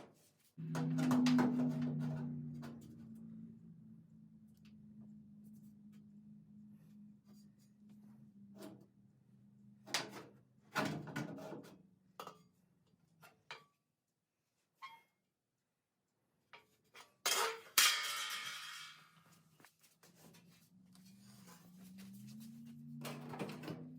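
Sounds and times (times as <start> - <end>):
sheet metal knocking and clanking: 0.6 - 3.2
low steady hum: 0.6 - 10.9.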